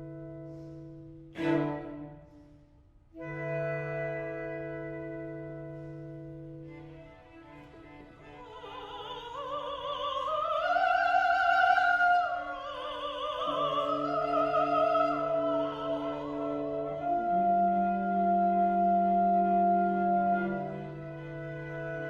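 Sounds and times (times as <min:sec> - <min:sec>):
chamber ensemble playing: 0:00.0 - 0:02.4, 0:03.2 - 0:07.1
classical voice singing with vibrato: 0:08.0 - 0:22.0.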